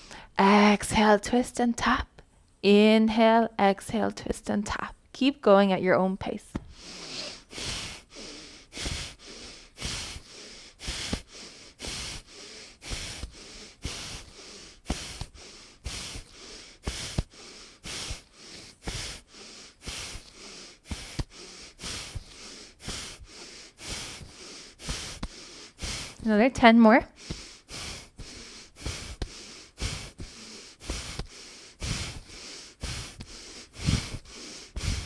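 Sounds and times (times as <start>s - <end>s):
person breathing quickly: 0.0s - 0.4s, 6.5s - 26.3s, 27.0s - 35.0s
hand tapping on chest: 6.5s - 6.8s, 10.9s - 12.2s, 14.9s - 17.3s, 19.9s - 23.3s, 24.9s - 26.2s, 27.2s - 35.0s.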